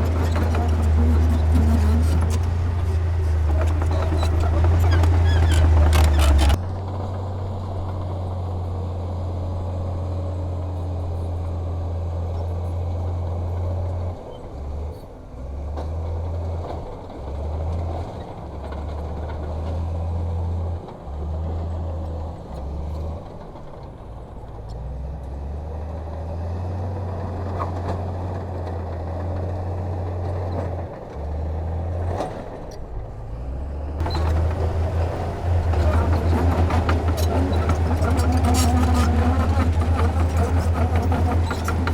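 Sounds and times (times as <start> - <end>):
diesel engine rumble: 0.0 - 14.3, 32.8 - 41.9.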